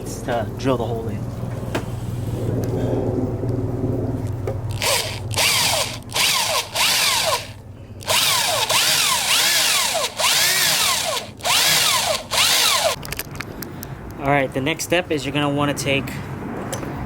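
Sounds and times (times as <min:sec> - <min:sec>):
power drill boring through metal: 0:04.7 - 0:13.0
drill bit squealing: 0:04.8 - 0:13.0.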